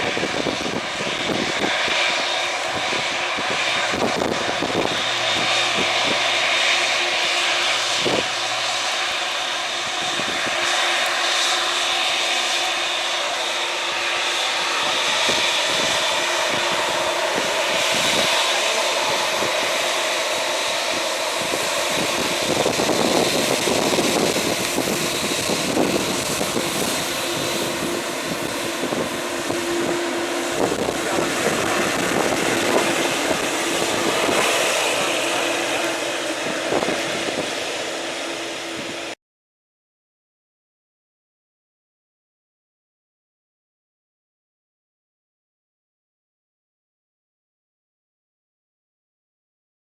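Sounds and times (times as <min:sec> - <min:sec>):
jet engines running: 0:00.0 - 0:39.2.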